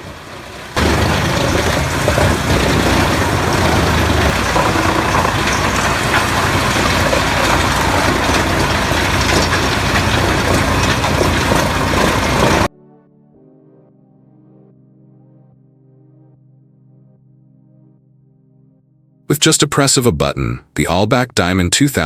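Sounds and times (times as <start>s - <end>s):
wood chipper running: 0.0s - 12.7s
wood splintering crackle: 0.0s - 12.7s.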